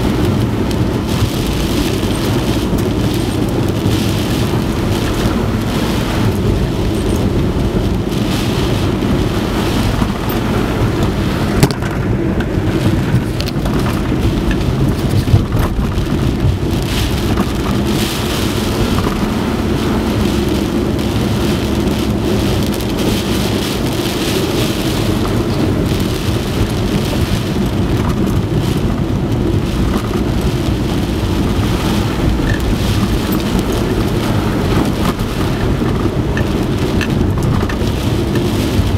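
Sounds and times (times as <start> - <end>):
heavy rain and wind: 0.0 - 38.9.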